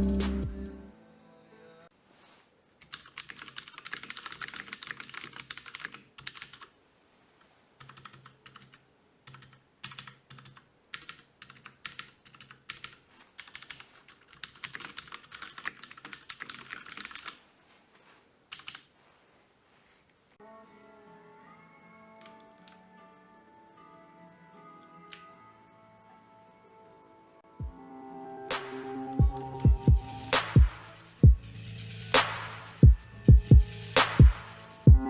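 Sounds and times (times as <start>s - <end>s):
clicky mechanical keyboard typing: 2.8s - 6.7s, 7.8s - 17.4s, 18.5s - 18.9s.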